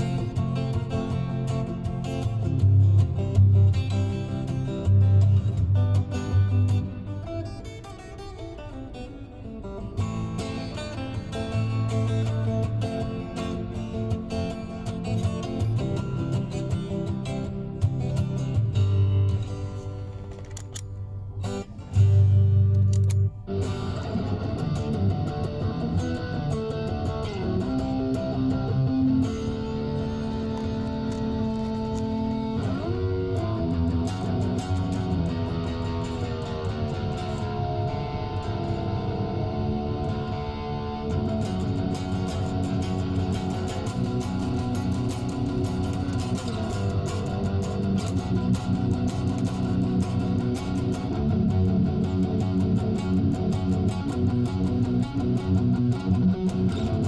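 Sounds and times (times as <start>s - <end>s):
electric guitar playing: 0.0s - 57.0s.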